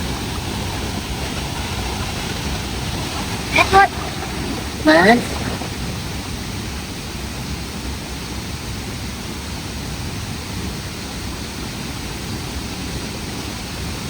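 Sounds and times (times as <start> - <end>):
waterfall roaring: 1.2 - 6.9.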